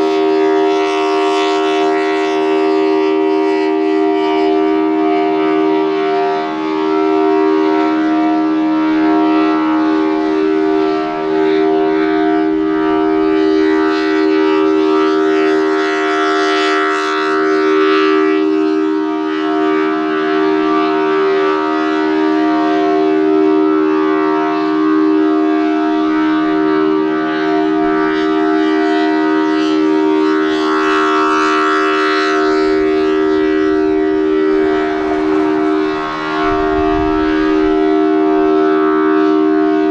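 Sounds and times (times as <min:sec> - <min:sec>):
mechanical siren two-note chord: 0:00.0 - 0:39.9.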